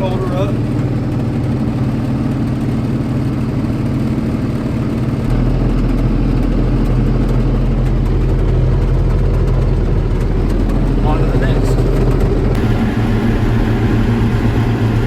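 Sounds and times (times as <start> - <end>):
tractor engine running: 0.0 - 15.0
deep low rumble: 3.3 - 15.0.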